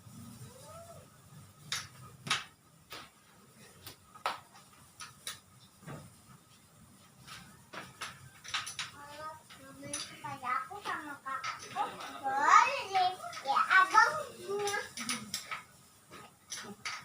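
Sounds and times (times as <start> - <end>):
small hard objects clicking: 7.3 - 12.2, 13.2 - 17.0.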